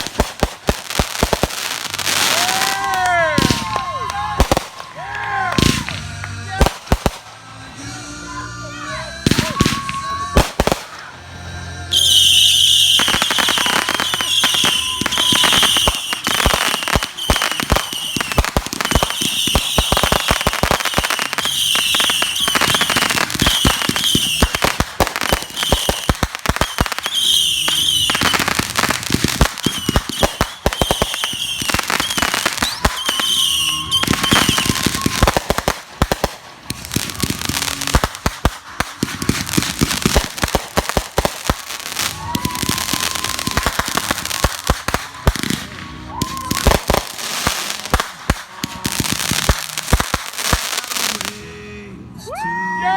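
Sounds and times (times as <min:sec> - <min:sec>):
fireworks crackling pops: 0:00.0 - 0:07.5, 0:09.2 - 0:11.1, 0:12.0 - 0:51.5
shrill firework whistles: 0:11.9 - 0:35.6, 0:42.0 - 0:44.5, 0:45.2 - 0:47.0.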